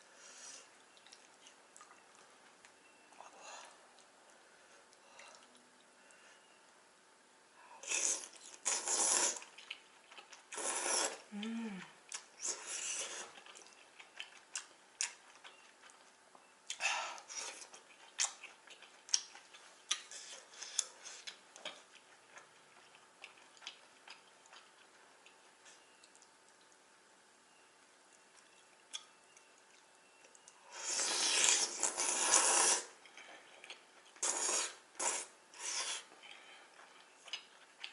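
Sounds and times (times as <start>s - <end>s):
noodles being slurped: 7.8s - 9.7s, 10.5s - 11.3s, 30.7s - 33.0s, 34.2s - 36.1s
wet chewing clicks: 12.1s - 26.8s.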